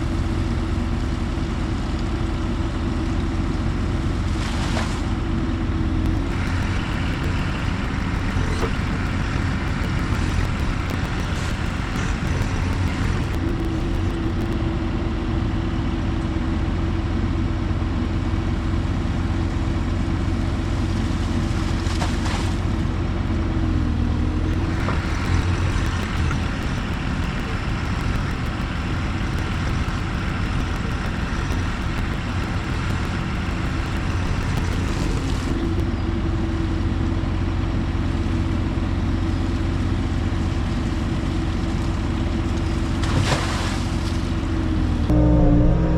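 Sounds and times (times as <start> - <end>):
diesel engine rumbling: 0.0 - 43.2, 44.2 - 45.9
hydraulic whine: 5.9 - 15.0, 23.8 - 36.6, 44.6 - 45.9.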